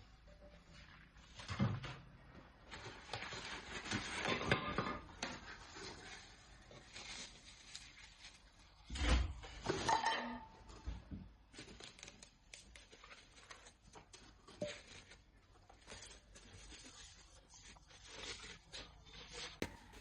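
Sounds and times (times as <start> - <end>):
packaging rustling: 19.6 - 20.0.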